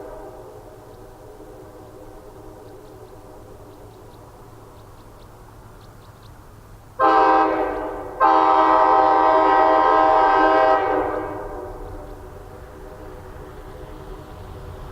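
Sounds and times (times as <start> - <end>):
locomotive horn chord: 7.0 - 13.4.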